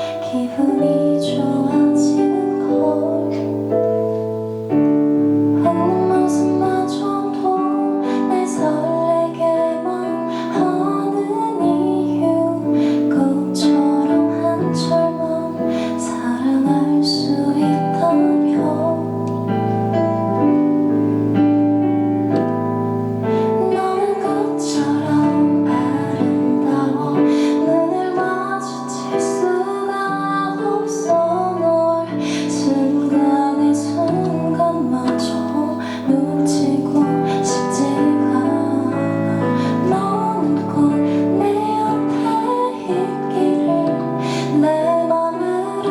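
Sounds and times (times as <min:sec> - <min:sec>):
woman singing slow song: 0:00.0 - 0:04.5, 0:05.5 - 0:19.6, 0:23.2 - 0:45.9
piano and keyboard accompaniment: 0:00.0 - 0:45.9.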